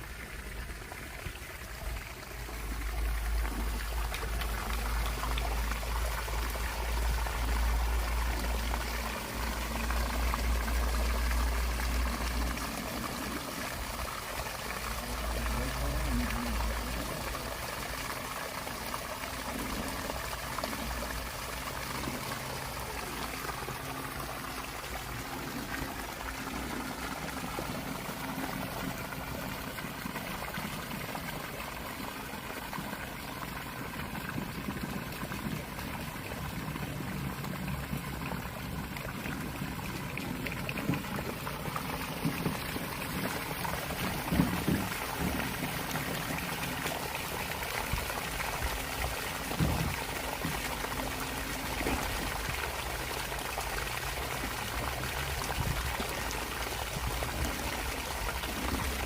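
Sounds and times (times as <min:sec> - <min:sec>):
water pouring and splashing: 0:00.0 - 0:59.0.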